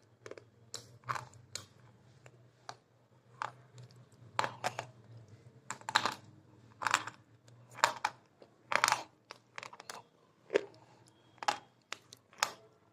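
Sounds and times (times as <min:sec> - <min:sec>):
crunchy food being chewed: 0:00.0 - 0:02.4, 0:06.8 - 0:12.8.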